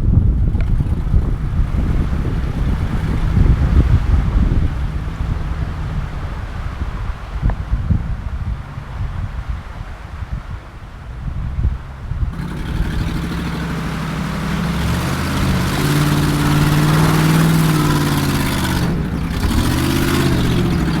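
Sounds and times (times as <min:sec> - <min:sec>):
car engine revving: 0:00.3 - 0:07.5, 0:12.3 - 0:21.0.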